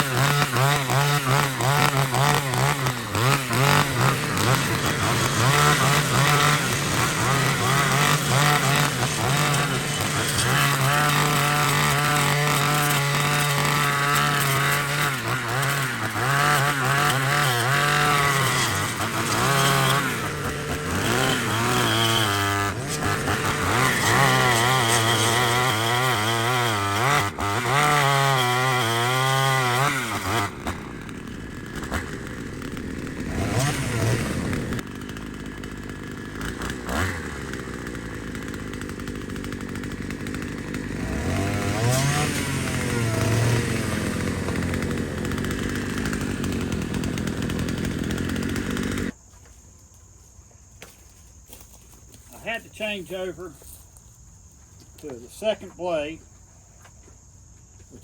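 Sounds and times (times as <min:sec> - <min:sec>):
brush cutter engine revving: 0:00.0 - 0:49.2, 0:51.5 - 0:53.8, 0:54.9 - 0:56.2.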